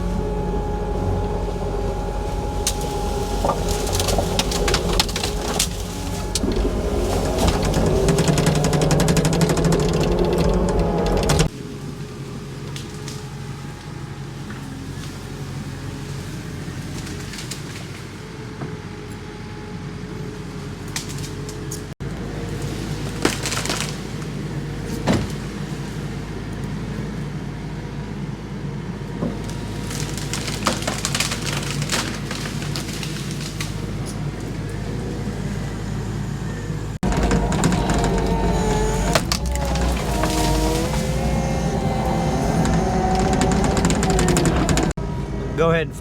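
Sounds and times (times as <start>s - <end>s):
diesel engine running: 0.0s - 46.0s
sharp knocks: 37.0s - 45.0s.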